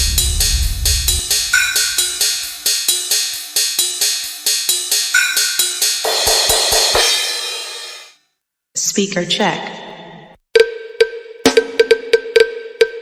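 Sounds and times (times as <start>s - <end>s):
low bass thumps: 0.0s - 2.6s
percussion-driven music: 0.0s - 8.1s, 10.6s - 13.0s.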